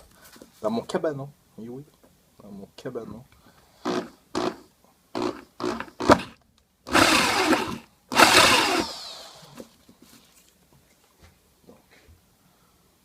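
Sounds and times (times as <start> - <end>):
electric drill drilling: 3.8 - 4.6, 5.2 - 9.5.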